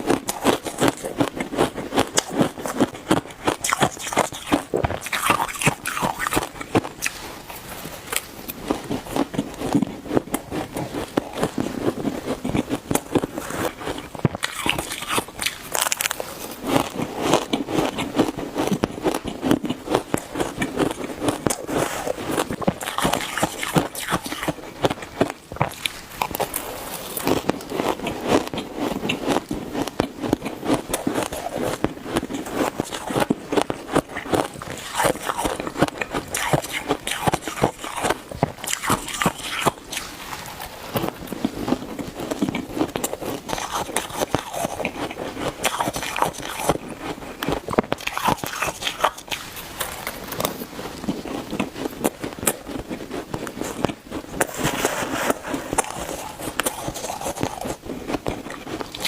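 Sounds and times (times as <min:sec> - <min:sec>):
ice being chewed: 0:00.0 - 0:59.0.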